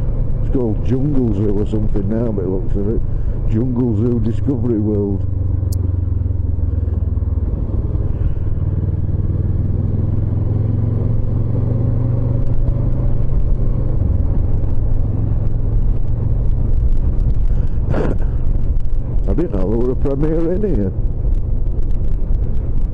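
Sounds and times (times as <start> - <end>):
motorcycle engine running: 0.0 - 22.9
wind buffeting microphone: 12.4 - 22.9.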